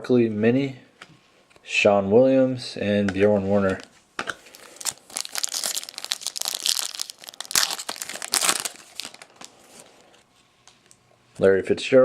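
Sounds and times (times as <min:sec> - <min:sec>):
foil wrapper crinkling and tearing: 0:03.8 - 0:10.0.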